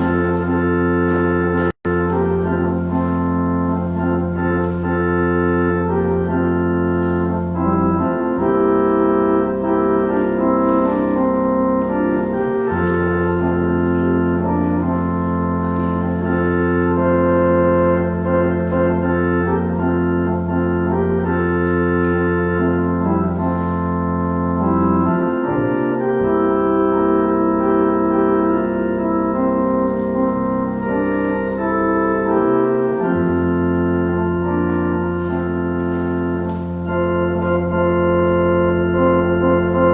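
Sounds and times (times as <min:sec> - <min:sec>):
organ playing sustained chords: 0:00.0 - 0:39.9.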